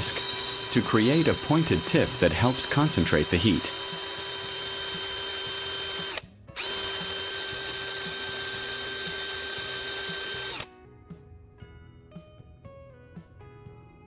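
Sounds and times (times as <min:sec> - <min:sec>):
small electric motor whining: 0:00.0 - 0:10.7.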